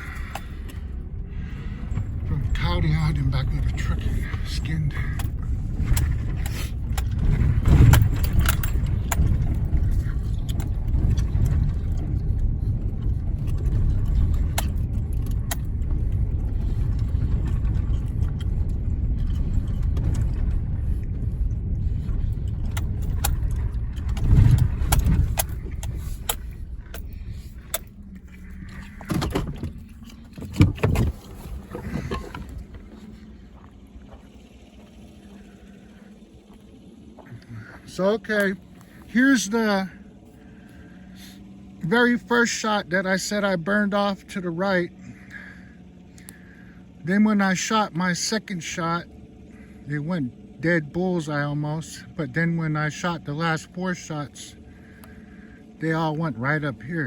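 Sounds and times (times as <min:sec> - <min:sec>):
rattles and clicks: 0:00.0 - 0:40.9
pickup truck rumbling: 0:00.0 - 0:57.0
sharp clunks: 0:05.1 - 0:11.8.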